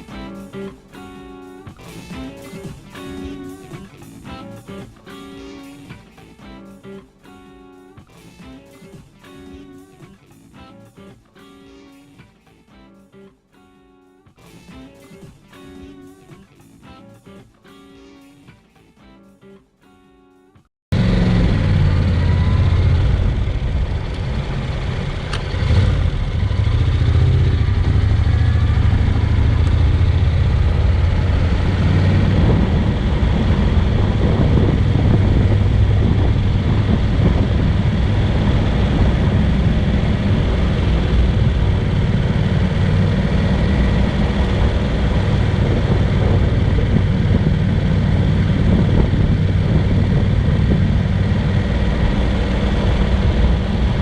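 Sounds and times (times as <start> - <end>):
motorcycle engine running: 20.9 - 54.0
wind and road noise: 21.0 - 54.0.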